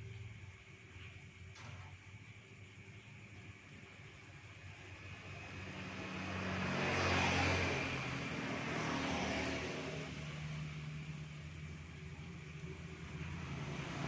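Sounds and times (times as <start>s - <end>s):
motor vehicle passing by: 4.8s - 14.0s.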